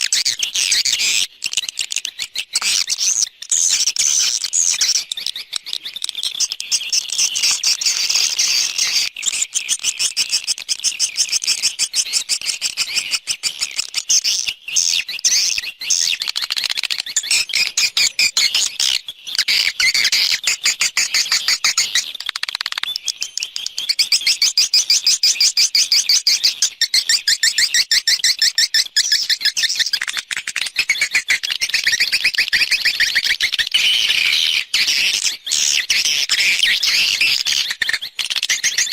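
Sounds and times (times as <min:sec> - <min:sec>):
swiftlets chirping and clicking: 0:19.4 - 0:24.6, 0:29.0 - 0:33.3.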